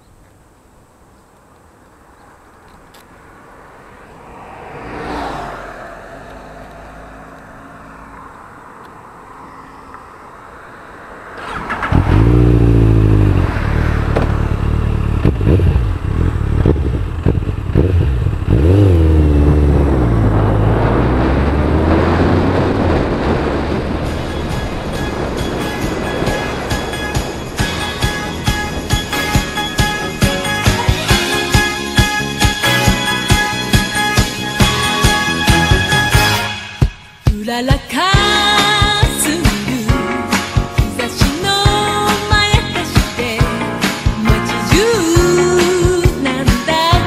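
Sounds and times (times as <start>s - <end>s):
motorcycle engine revving: 11.3s - 36.2s.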